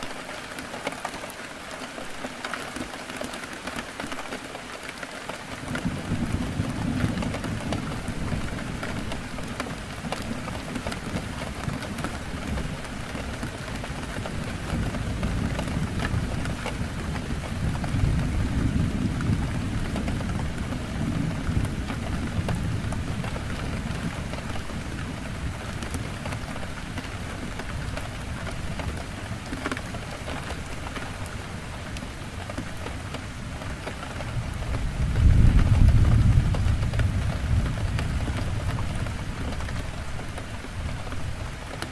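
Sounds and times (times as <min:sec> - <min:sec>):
heavy rain on a window: 0:00.0 - 0:41.9
thunder rumbles: 0:05.6 - 0:29.1, 0:34.2 - 0:41.4.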